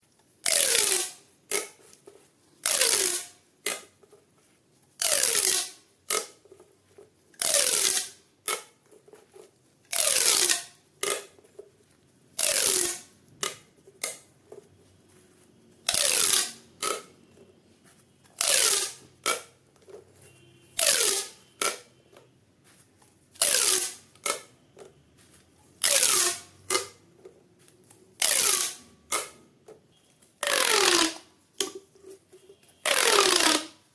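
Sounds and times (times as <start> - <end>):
small plastic clicks: 5.0 - 6.6.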